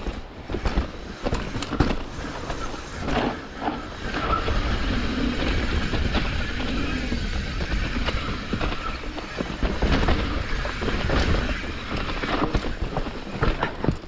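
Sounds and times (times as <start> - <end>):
bike chain and frame rattling: 0.0 - 14.0
bike tyres rumbling on dirt: 0.0 - 14.0.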